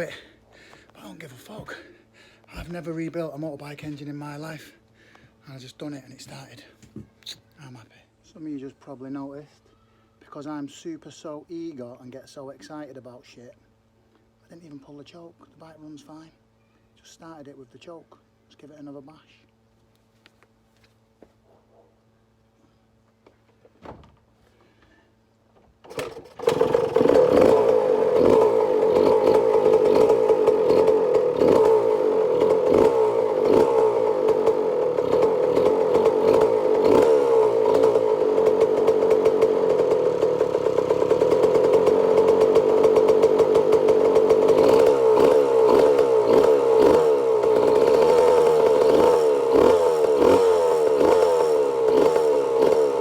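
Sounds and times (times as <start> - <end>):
two-stroke engine revving: 0.0 - 0.3, 25.9 - 53.0.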